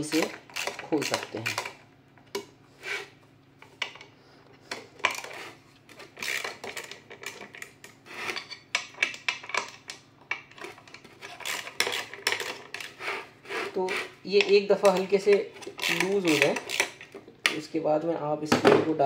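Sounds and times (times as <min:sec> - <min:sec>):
screwdriver clicking and scraping: 0:00.0 - 0:01.7, 0:04.7 - 0:17.2.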